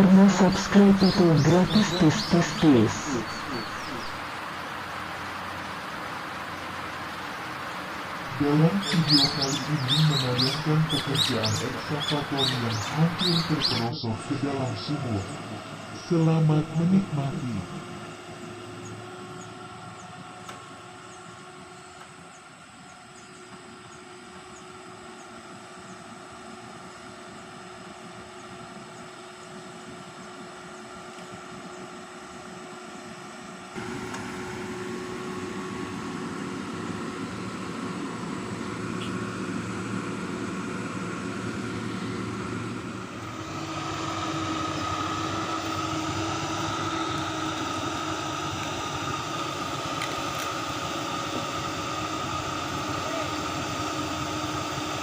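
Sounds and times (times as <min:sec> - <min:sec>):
hydraulic whine: 0:00.0 - 0:22.2, 0:33.7 - 0:55.0
excavator diesel engine: 0:00.0 - 0:55.0.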